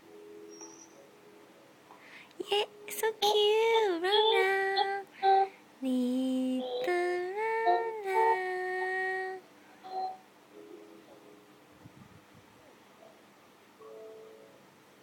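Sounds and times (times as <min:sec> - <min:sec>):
high voice singing slow tune: 0:02.4 - 0:10.2.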